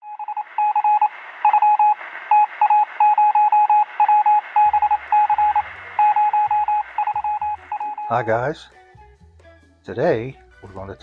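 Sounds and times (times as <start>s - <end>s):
morse code beeping: 0.0s - 8.5s
radio hiss: 0.4s - 3.1s.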